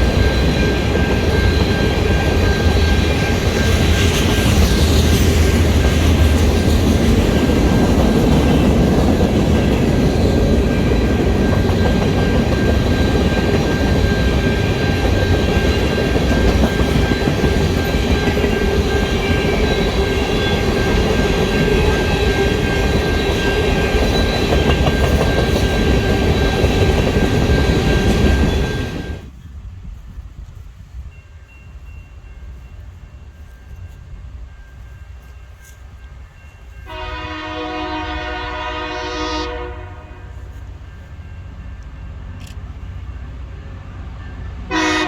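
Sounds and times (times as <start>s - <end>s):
high-pitched whine: 0.0s - 29.3s
train rumbling past: 0.0s - 45.0s.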